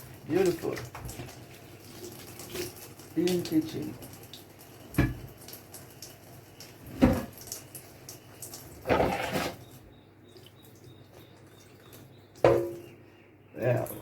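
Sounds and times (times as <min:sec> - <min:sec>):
water rushing from tap: 0:00.0 - 0:09.7
dish knocking: 0:12.4 - 0:12.8.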